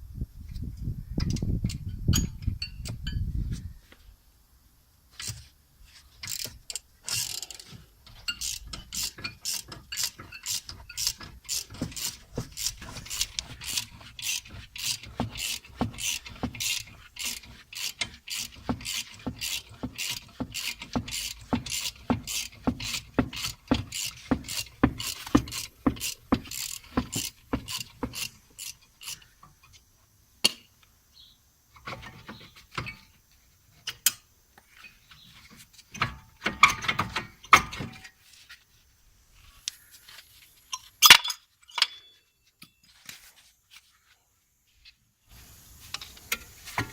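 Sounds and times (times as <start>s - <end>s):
ratchet wrench clicking: 6.2s - 29.3s.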